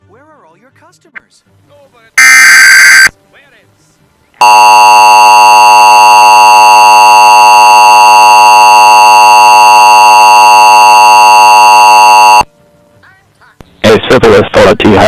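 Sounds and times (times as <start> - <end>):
two-tone alert signal: 2.2 - 3.1, 4.4 - 12.5.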